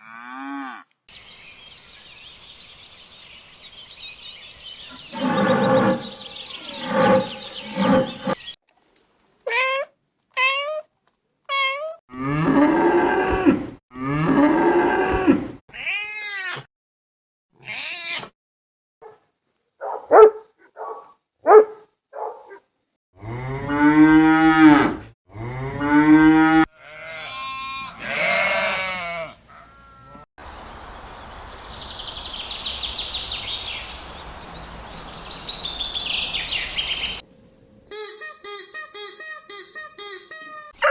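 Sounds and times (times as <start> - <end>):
high chirping: 1.2 - 8.6, 30.5 - 37.2
higher animal calls: 4.9 - 8.6, 14.4 - 15.5
cattle mooing: 5.0 - 8.5, 12.2 - 15.6
hiss-like background: 30.4 - 37.5.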